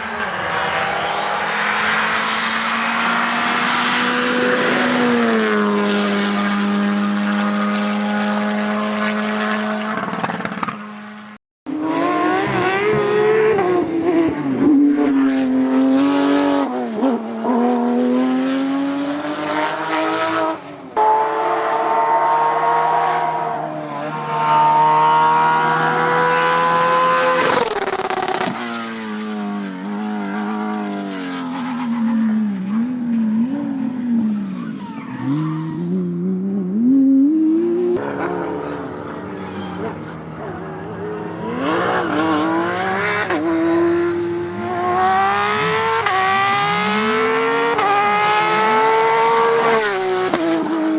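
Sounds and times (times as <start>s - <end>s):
rally car engine revving: 0.0s - 50.9s.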